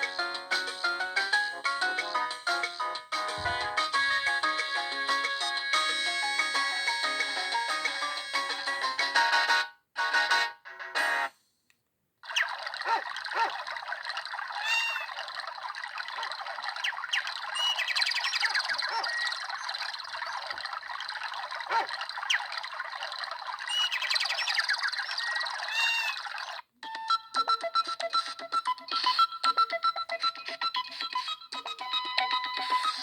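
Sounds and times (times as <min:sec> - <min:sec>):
electronic ringtone notes: 0:00.0 - 0:11.3, 0:26.8 - 0:33.0
birdsong ringtone: 0:30.7 - 0:33.0.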